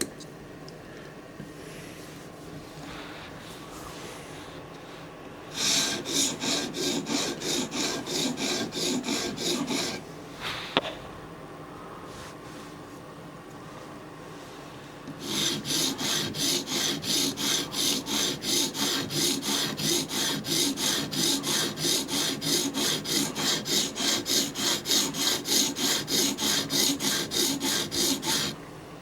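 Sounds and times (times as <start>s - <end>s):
knife rasping on sharpening stone: 15.2s - 28.6s.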